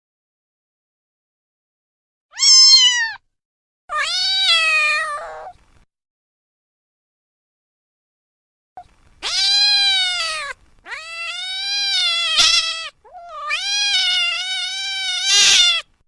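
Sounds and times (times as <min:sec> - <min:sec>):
cat meowing: 0:02.3 - 0:03.2, 0:03.9 - 0:05.6, 0:09.2 - 0:15.9.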